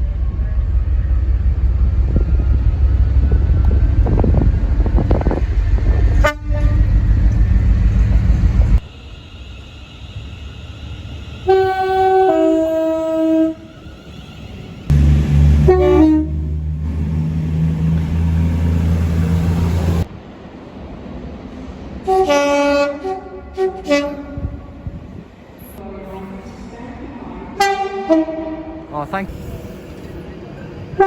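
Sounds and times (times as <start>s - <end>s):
train rumbling: 0.0s - 31.0s
train horn: 6.1s - 7.0s, 11.4s - 13.7s, 14.9s - 17.3s, 22.0s - 24.6s, 27.6s - 28.9s.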